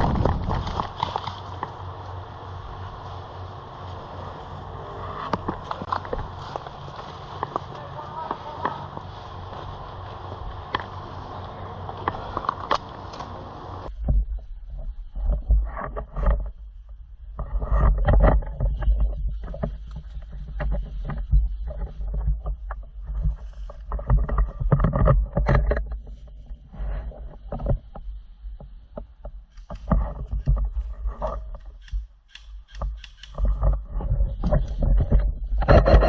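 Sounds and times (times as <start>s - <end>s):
footsteps through brush: 0.0s - 13.9s
rustling through brush: 0.0s - 14.0s
low wind rumble: 0.0s - 36.0s.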